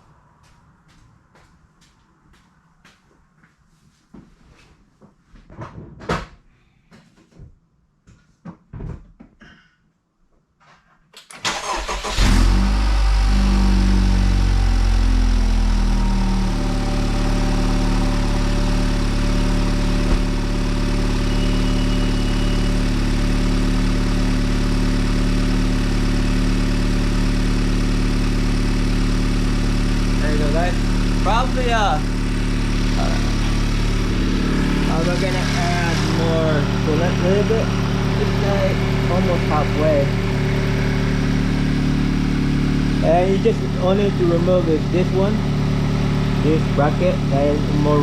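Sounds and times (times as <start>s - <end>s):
car engine cranking and starting: 11.2s - 48.0s
car engine idling: 11.5s - 48.0s.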